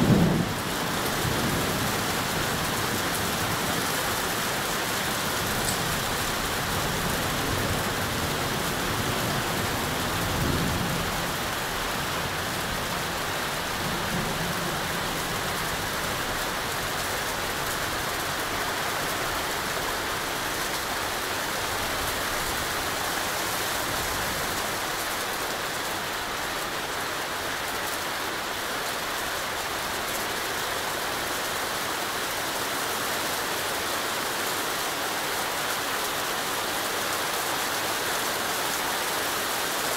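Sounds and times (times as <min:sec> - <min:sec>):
thunder rumbling: 0:00.0 - 0:15.5
heavy rain hissing: 0:00.0 - 0:39.9.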